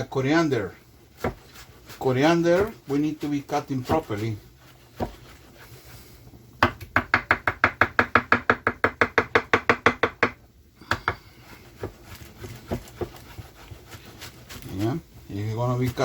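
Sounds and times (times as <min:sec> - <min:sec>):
knife chopping herbs: 0:01.1 - 0:05.5, 0:06.6 - 0:15.0.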